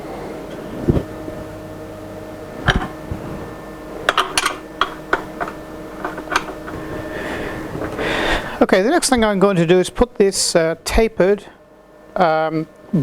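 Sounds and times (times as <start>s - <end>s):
steady machine hum: 0.0s - 13.0s
metal tools clinking and knocking: 4.1s - 6.8s.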